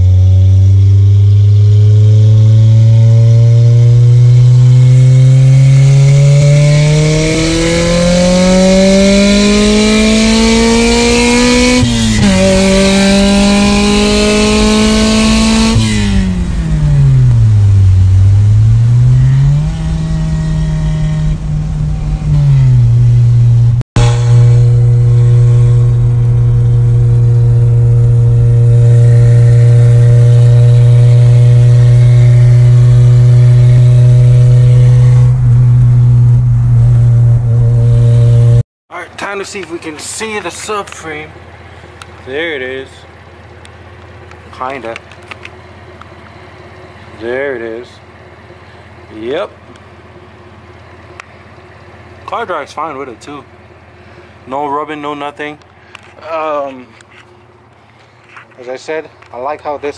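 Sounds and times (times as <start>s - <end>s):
car engine accelerating: 0.0s - 38.6s.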